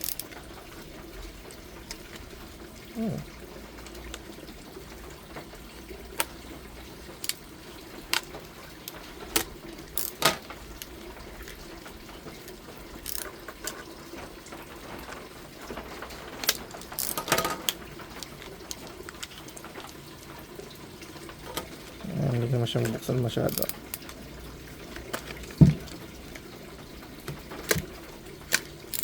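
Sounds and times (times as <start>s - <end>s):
clicks and knocks of handling pliers: 0.0s - 0.4s, 8.1s - 11.6s, 13.0s - 13.9s, 16.4s - 20.0s, 22.8s - 24.2s, 28.5s - 29.0s.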